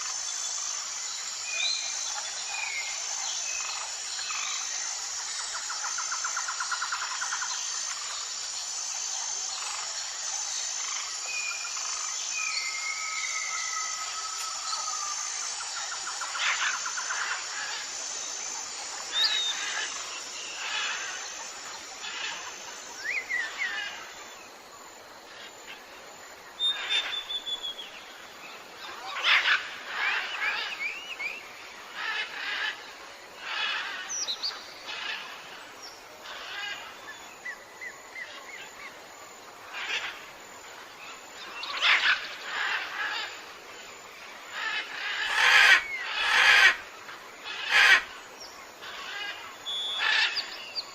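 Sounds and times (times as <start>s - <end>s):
background hiss: 0.0s - 50.9s
birds chirping and whistling: 26.6s - 27.9s, 49.7s - 50.9s.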